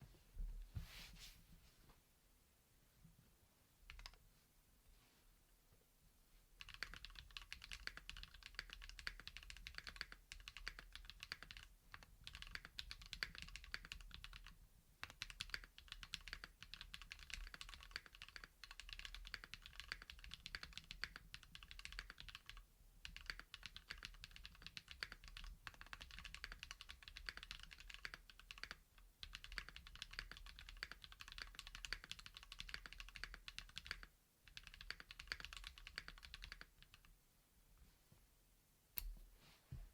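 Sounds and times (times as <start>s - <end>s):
fast typing on mechanical keyboard: 3.9s - 4.2s, 6.6s - 37.1s.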